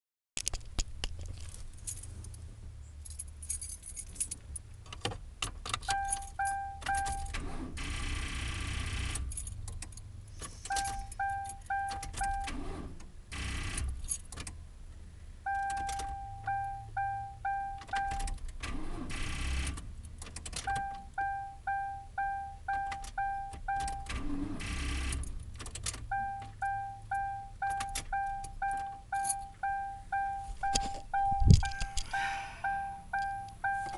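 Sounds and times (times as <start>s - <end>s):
keys jangling in ignition: 0.4s - 7.4s, 9.2s - 12.5s, 13.9s - 14.6s, 27.6s - 29.7s, 30.5s - 32.2s
dashboard warning chime: 5.9s - 7.3s, 10.7s - 12.6s, 15.5s - 18.3s, 20.7s - 24.2s, 26.1s - 33.9s.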